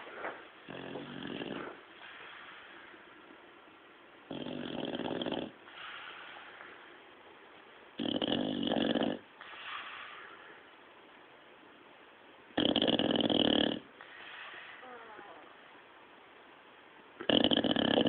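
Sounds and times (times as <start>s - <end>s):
dog snoring: 0.6s - 2.9s, 4.2s - 6.5s, 8.0s - 10.4s, 12.5s - 15.5s, 17.2s - 18.0s
dog breathing: 4.3s - 7.0s, 8.0s - 10.7s, 12.6s - 15.4s.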